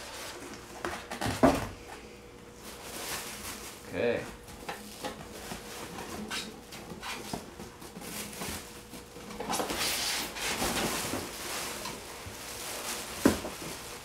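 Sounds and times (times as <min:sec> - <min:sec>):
packaging rustling: 0:07.1 - 0:14.0.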